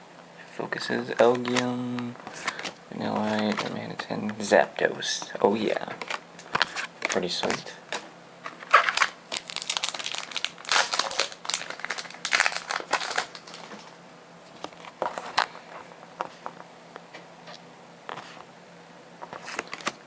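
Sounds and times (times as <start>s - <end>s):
trading cards rustling: 1.1s - 3.9s, 6.0s - 7.7s, 8.5s - 13.9s
foil wrapper crinkling and tearing: 8.6s - 13.8s.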